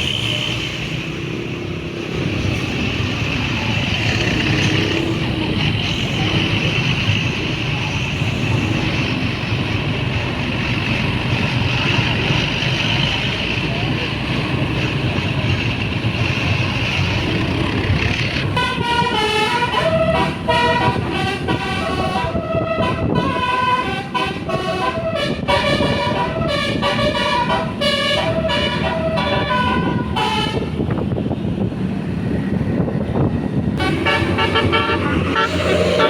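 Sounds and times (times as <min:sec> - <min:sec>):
bus engine rumbling: 0:00.0 - 0:36.0
bus horn playing melody: 0:18.4 - 0:31.0, 0:33.8 - 0:36.0.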